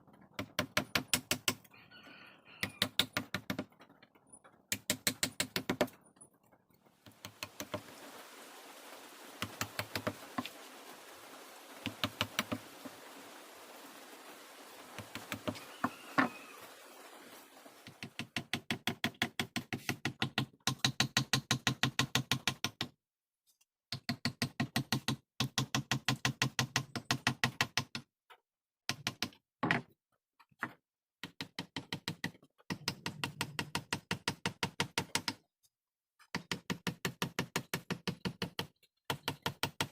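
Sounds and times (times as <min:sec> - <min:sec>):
mallet striking chisel into wood: 0:00.4 - 0:01.6.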